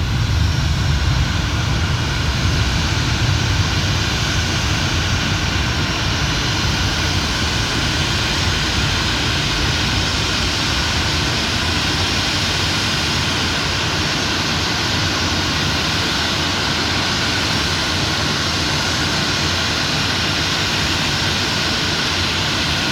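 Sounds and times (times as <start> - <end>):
jet engines taking off: 0.0 - 22.9.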